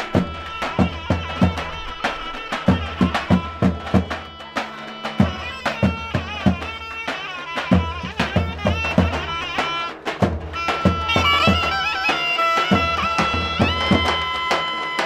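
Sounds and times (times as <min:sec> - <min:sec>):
drum beats: 0:00.0 - 0:15.0
reedy wind instrument melody: 0:00.0 - 0:15.0.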